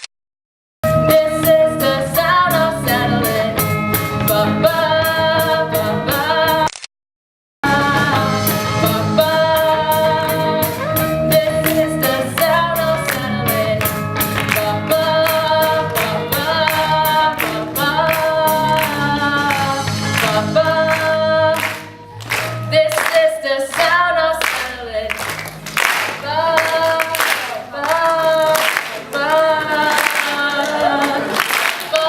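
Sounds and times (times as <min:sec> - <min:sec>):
person singing: 0:00.9 - 0:06.7, 0:07.6 - 0:25.2, 0:26.0 - 0:32.0
band playing rock song: 0:07.6 - 0:22.8.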